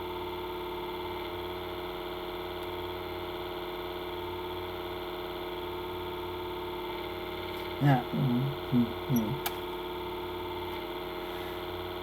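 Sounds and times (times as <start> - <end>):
steady electrical hum: 0.0 - 12.0.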